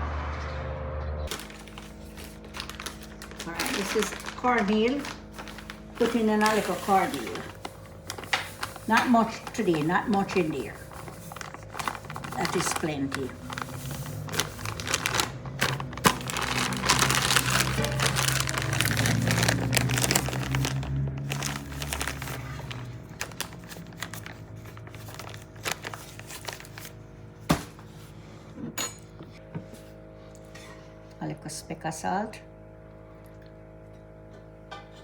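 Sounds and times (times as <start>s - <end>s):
crinkling rustle: 1.3s - 27.0s.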